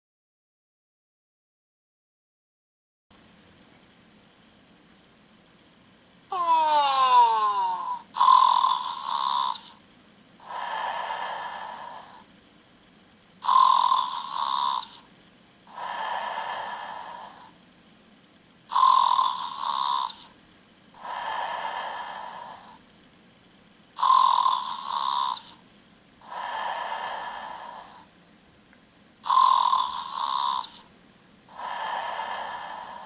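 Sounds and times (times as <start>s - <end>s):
toy playing recorded snore: 6.3s - 9.8s, 10.4s - 12.3s, 13.4s - 17.6s, 18.7s - 22.8s, 24.0s - 25.6s, 26.2s - 28.1s, 29.2s - 30.9s, 31.5s - 33.0s.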